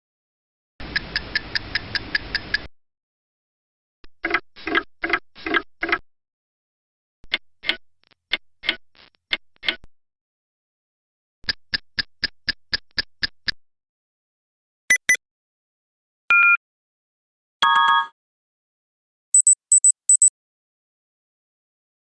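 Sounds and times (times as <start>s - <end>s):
clock ticking: 14.9s - 15.2s, 19.4s - 20.3s
short electronic beep: 14.9s - 15.2s, 19.4s - 20.3s.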